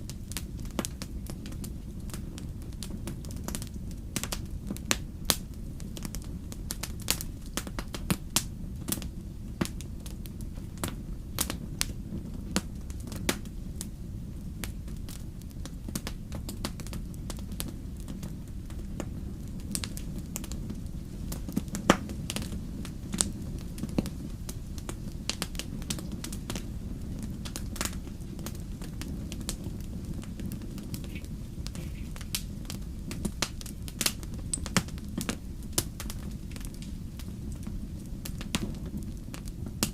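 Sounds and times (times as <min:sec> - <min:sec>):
steady low rumble: 0:00.0 - 0:39.9
wood fire crackling: 0:00.0 - 0:39.9
sharp pops and snaps: 0:30.8 - 0:32.5, 0:33.1 - 0:36.9.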